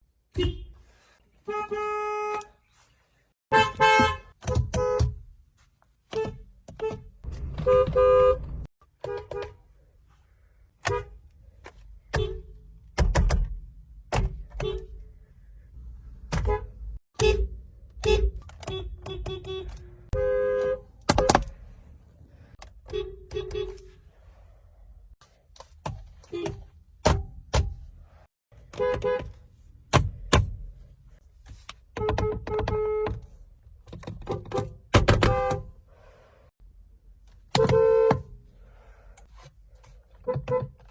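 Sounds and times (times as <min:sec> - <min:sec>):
car horn honks: 0:00.3 - 0:00.8, 0:01.4 - 0:02.6, 0:03.5 - 0:05.2, 0:06.1 - 0:09.6, 0:16.3 - 0:21.5, 0:22.8 - 0:24.0, 0:28.7 - 0:29.4, 0:32.0 - 0:33.2, 0:34.3 - 0:35.7, 0:37.5 - 0:38.3.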